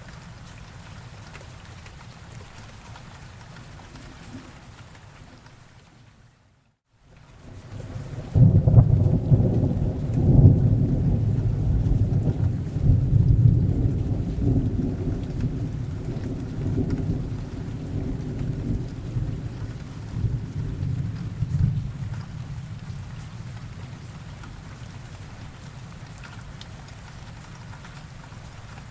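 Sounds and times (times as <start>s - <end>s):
steady rain: 0.0s - 28.9s
low rolling thunder: 7.4s - 24.7s.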